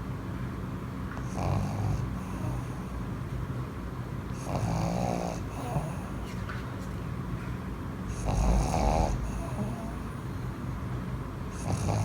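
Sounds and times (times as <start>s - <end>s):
dog snoring: 1.2s - 3.1s, 4.3s - 6.4s, 8.1s - 10.7s, 11.4s - 12.0s.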